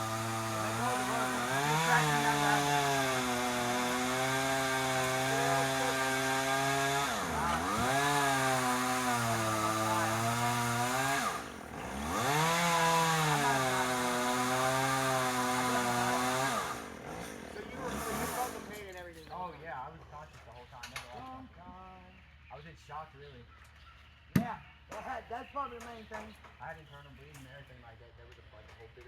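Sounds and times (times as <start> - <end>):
chainsaw cutting wood: 0.0 - 19.0.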